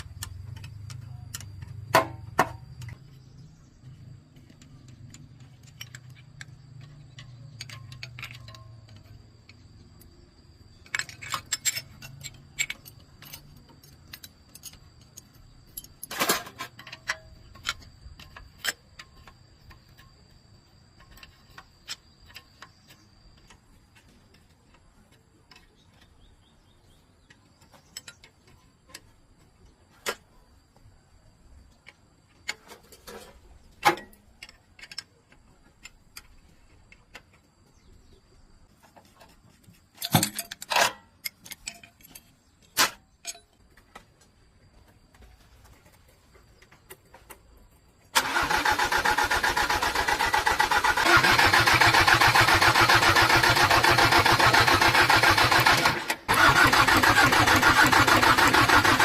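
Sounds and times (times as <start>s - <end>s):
metal tools clicking and clinking: 3.8s - 26.1s, 39.2s - 43.8s.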